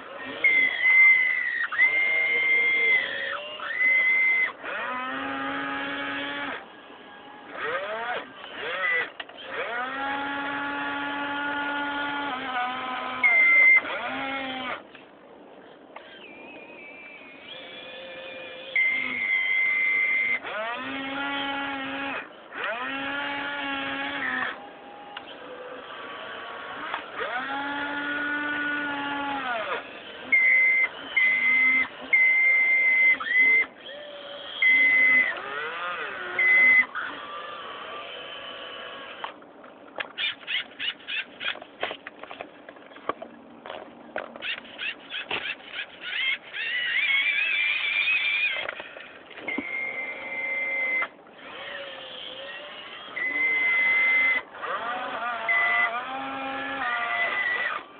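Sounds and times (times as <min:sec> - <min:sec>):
electric motors whining: 0:00.0 - 0:15.0, 0:15.6 - 0:57.9.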